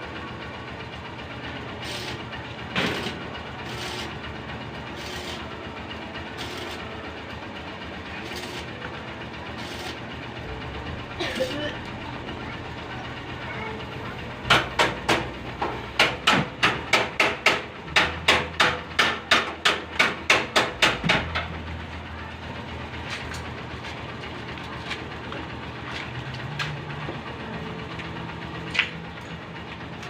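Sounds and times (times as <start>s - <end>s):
hammer striking metal: 14.5s - 21.5s.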